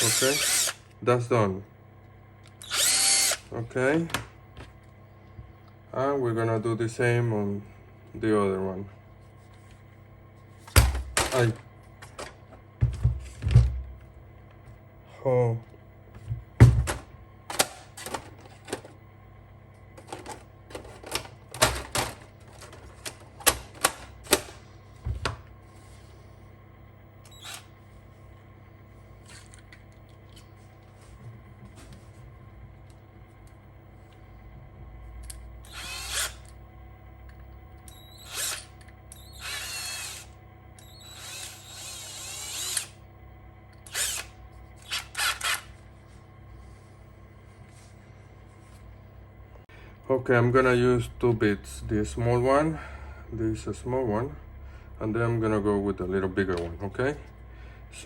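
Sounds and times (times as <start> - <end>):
small drill boring into plastic: 0.0 - 0.9, 2.5 - 3.5, 27.2 - 27.7, 35.6 - 36.5, 37.9 - 43.0, 43.8 - 45.7.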